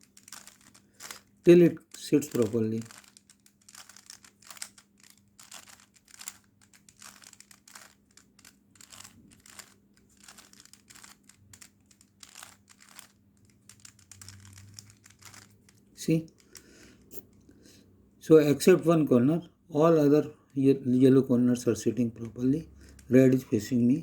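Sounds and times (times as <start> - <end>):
plastic puzzle cube clicking: 0.0 - 17.5.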